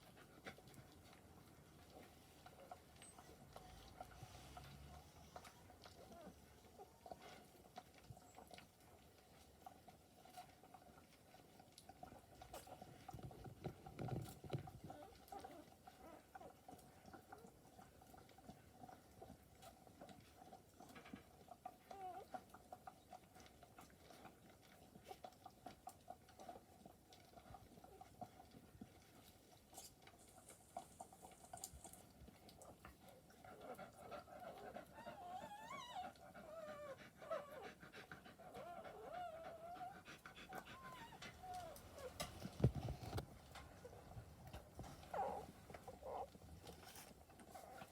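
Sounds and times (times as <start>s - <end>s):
soft clicks and rustling: 0.0s - 34.3s, 40.6s - 47.9s
puppies squeaking and snuffling: 1.8s - 47.9s
puppy whimpering: 5.0s - 7.4s, 14.8s - 16.7s, 21.6s - 22.5s, 33.5s - 43.1s, 44.8s - 47.9s.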